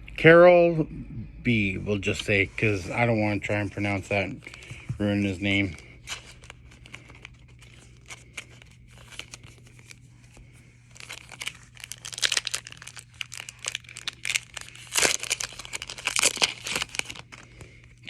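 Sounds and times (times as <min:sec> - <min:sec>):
wrapper tearing and crinkling: 0:05.5 - 0:10.1, 0:10.9 - 0:18.0.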